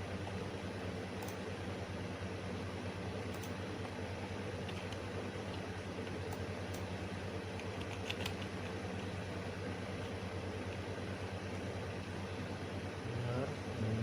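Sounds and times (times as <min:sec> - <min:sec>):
low machine hum: 0:00.0 - 0:14.0
keyboard or mouse clicks: 0:03.4 - 0:03.6.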